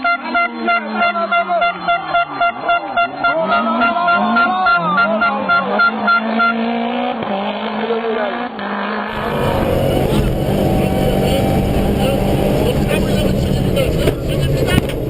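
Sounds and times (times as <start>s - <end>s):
repeated horn-like beep: 0.0s - 7.1s
car engine revving: 0.0s - 15.0s.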